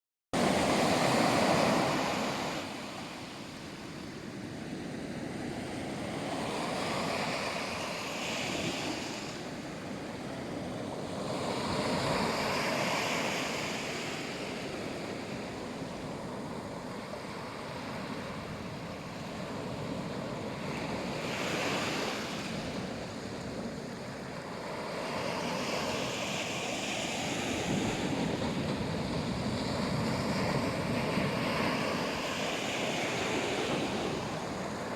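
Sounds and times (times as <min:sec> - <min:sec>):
waves washing onto shore: 0:00.4 - 0:34.9
wind on microphone: 0:25.3 - 0:34.9.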